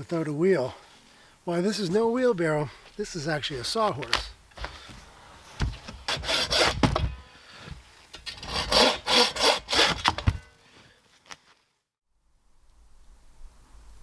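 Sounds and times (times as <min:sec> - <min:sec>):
hand saw cutting log: 0:05.8 - 0:07.1, 0:08.2 - 0:10.4.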